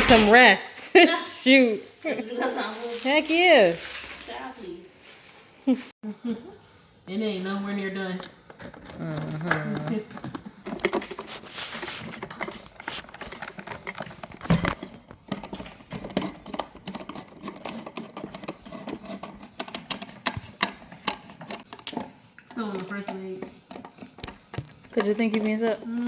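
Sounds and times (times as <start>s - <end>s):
furniture parts clicking and knocking: 0.0s - 0.6s, 8.2s - 26.0s.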